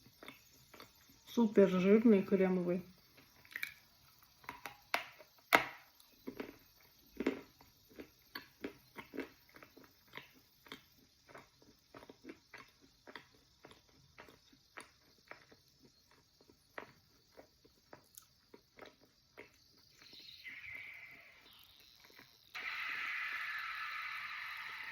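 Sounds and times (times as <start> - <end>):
wet chewing clicks: 0.0 - 1.2, 6.0 - 20.9.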